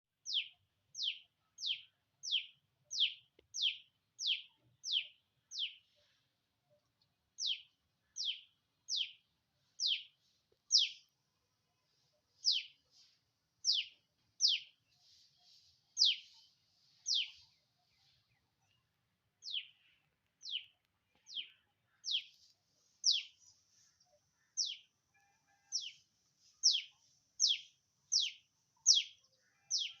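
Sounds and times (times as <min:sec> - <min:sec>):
faint bird twittering: 0:07.4 - 0:11.1, 0:11.9 - 0:26.0, 0:26.6 - 0:30.0.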